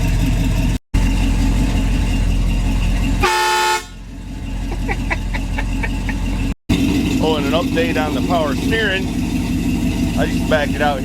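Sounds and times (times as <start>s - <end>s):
truck engine idling: 0.0s - 11.0s
air horn blast: 3.2s - 4.0s.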